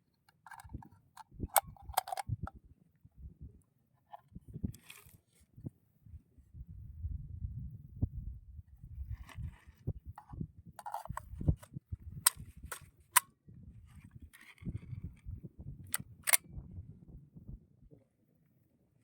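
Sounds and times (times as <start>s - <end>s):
rifle metallic clicks and snaps: 0.3s - 2.4s, 10.8s - 11.6s, 12.2s - 13.3s, 15.9s - 16.4s.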